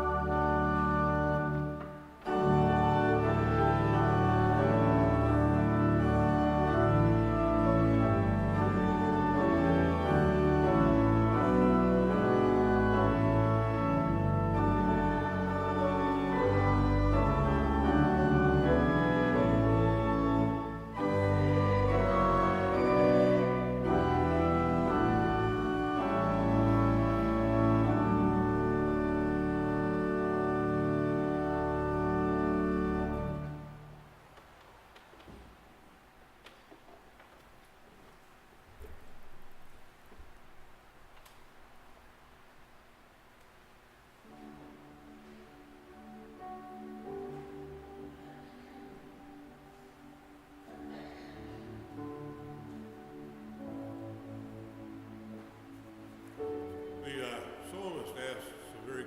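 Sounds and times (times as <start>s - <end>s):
church organ chords: 0.0s - 34.3s, 43.8s - 59.0s.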